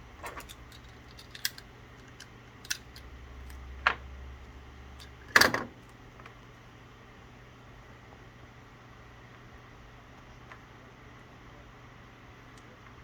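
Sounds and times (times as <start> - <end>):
light clicks: 0.2 - 3.7.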